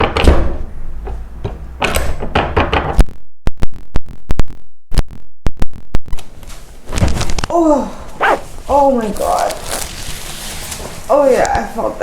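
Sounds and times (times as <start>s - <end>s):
sharp knocks and clicks: 0.0s - 3.1s.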